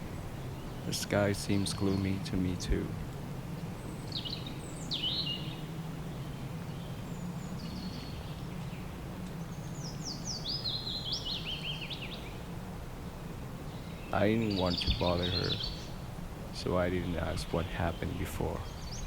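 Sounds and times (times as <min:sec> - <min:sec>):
birds chirping: 0:00.0 - 0:19.0
low background rumble: 0:00.0 - 0:19.0.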